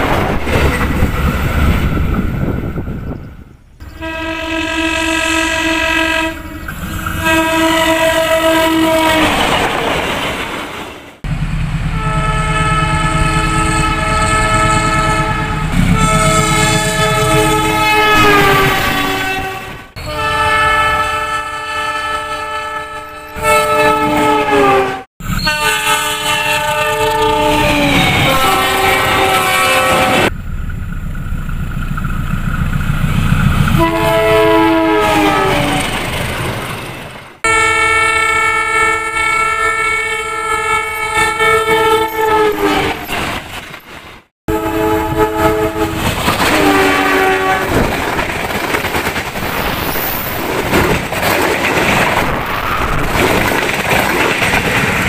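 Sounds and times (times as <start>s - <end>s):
rumble of passing train: 0.0s - 55.0s
train horn blasts: 3.8s - 9.4s, 11.9s - 30.3s, 33.7s - 35.9s, 37.4s - 43.1s, 44.5s - 47.9s.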